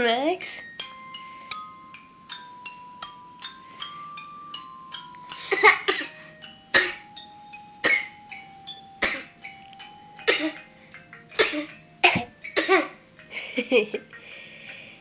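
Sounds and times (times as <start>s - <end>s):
toy xylophone notes: 0.0s - 15.0s
person coughing: 5.4s - 6.2s, 6.8s - 7.1s, 7.8s - 8.2s, 9.0s - 9.4s, 10.2s - 10.7s, 11.4s - 13.0s.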